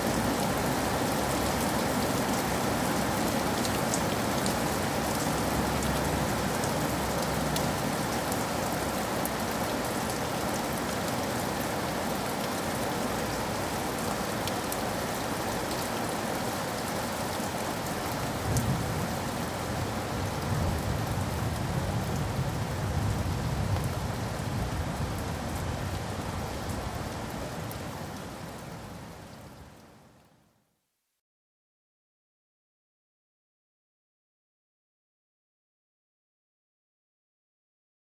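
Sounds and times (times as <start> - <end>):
heavy rain on a window: 0.0 - 30.5.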